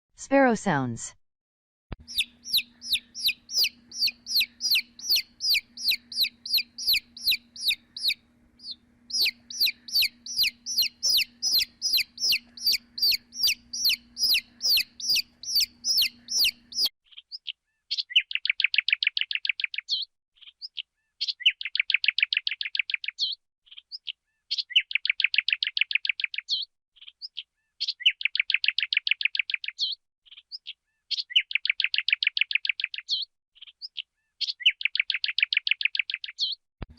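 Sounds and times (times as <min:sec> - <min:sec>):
faint low hum: 0:02.0 - 0:16.9
sparrow chirping: 0:02.0 - 0:16.9
rapid trilled bird bursts: 0:02.1 - 0:16.9.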